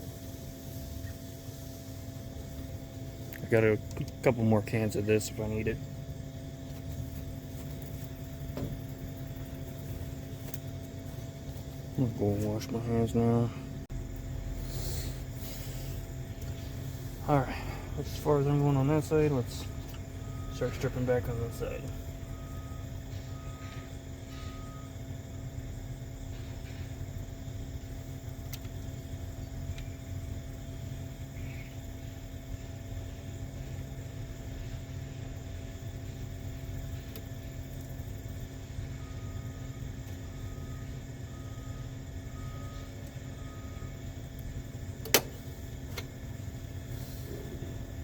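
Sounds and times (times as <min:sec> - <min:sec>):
sharp click: 0:45.0 - 0:46.1.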